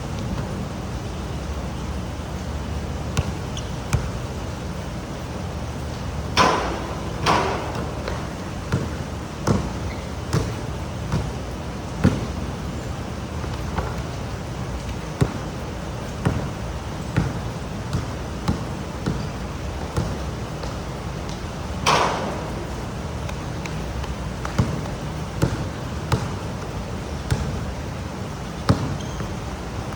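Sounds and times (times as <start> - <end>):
sharp knocks: 6.4 - 8.9, 21.8 - 22.7.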